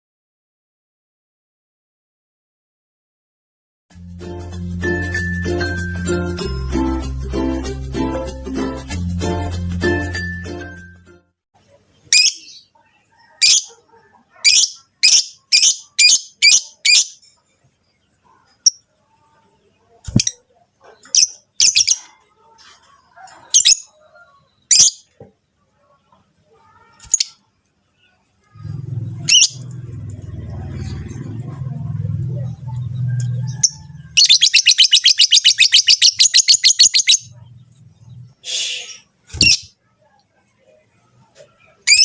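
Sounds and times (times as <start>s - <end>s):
lovebirds chirping: 11.8s - 25.6s, 32.4s - 39.8s.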